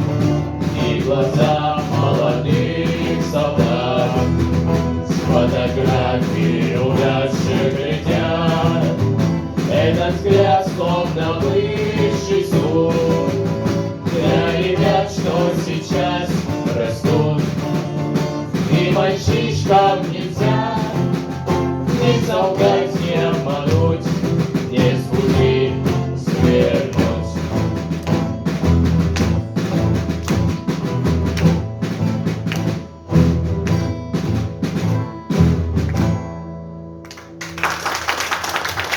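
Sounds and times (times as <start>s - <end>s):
guitar-led band playing: 0.0s - 37.6s
person singing: 0.7s - 21.3s, 21.9s - 27.7s.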